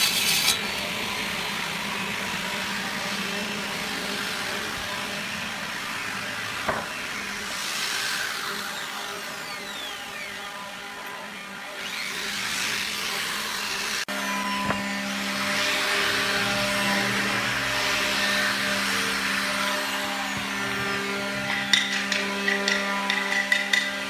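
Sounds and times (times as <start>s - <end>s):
power tool grinding: 0.0s - 24.0s
sharp knocks: 21.4s - 23.9s.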